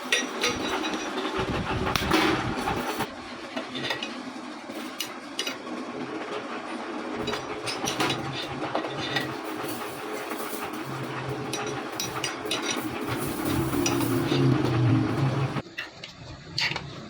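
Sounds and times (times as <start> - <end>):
machine running: 0.0 - 17.0
metallic clinks and knocks: 8.9 - 15.9.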